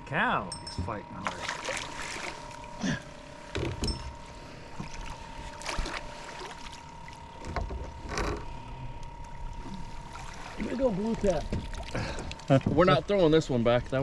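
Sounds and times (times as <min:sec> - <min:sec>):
steady electric whine: 0:00.0 - 0:14.0
water splashing: 0:01.2 - 0:03.0, 0:04.8 - 0:07.6, 0:09.3 - 0:12.8.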